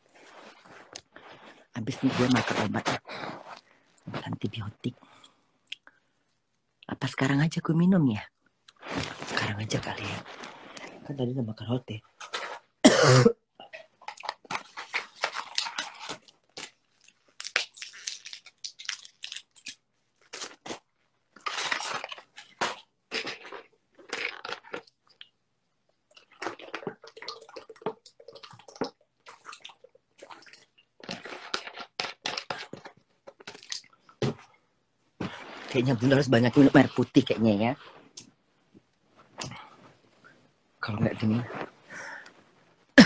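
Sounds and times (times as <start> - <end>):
packaging crinkling and crunching: 14.0 - 25.1, 30.2 - 34.4.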